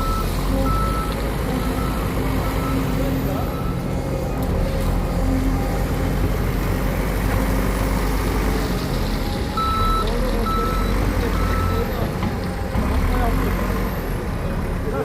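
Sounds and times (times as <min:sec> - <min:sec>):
backup alarm beeps: 0:00.0 - 0:02.9, 0:09.6 - 0:11.9
heavy diesel machinery running: 0:00.0 - 0:15.0.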